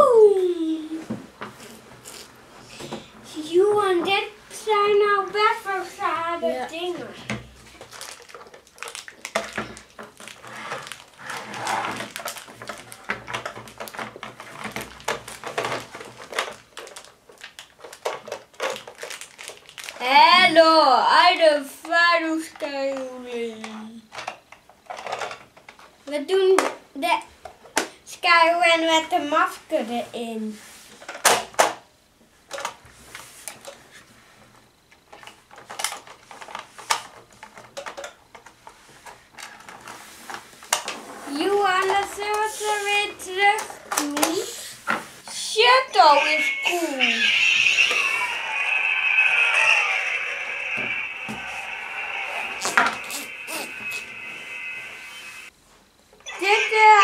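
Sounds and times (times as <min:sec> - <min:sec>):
plastic toys clicking and rustling: 0:04.1 - 0:20.4, 0:21.8 - 0:26.8, 0:32.5 - 0:33.8, 0:35.0 - 0:52.1
plastic toy parts clicking: 0:12.0 - 0:20.0, 0:35.2 - 0:38.5.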